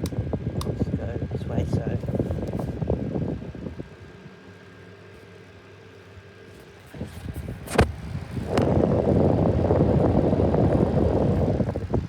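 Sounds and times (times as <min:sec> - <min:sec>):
fan motor hum: 0:00.0 - 0:12.0
air stream rumbling on microphone: 0:06.9 - 0:12.0.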